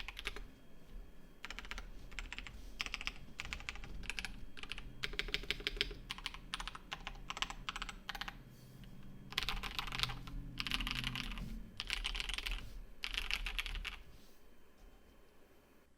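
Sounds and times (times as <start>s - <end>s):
mechanical keyboard typing: 0.0s - 0.4s, 1.4s - 8.4s, 9.3s - 14.0s.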